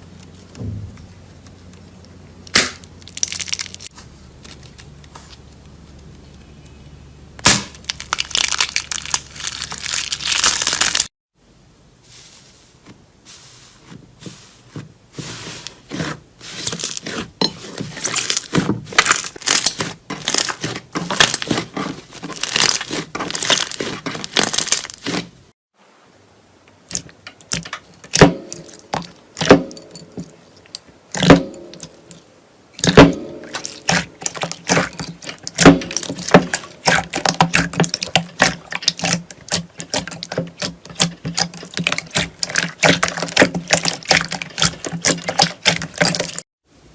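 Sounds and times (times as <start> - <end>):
slime crackling and popping: 2.5 - 4.9, 7.4 - 11.1, 22.3 - 25.2, 32.8 - 46.4.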